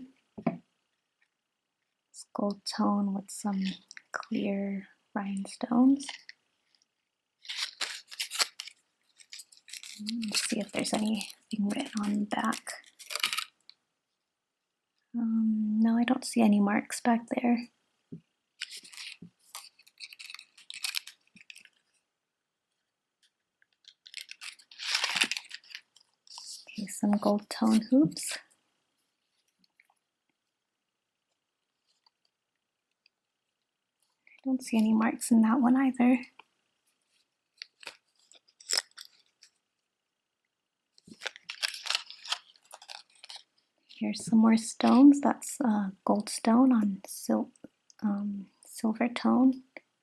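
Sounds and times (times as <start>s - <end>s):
earrings clicking and rustling: 7.4s - 13.7s, 18.6s - 22.0s, 23.7s - 27.8s, 37.6s - 39.6s, 41.0s - 44.0s.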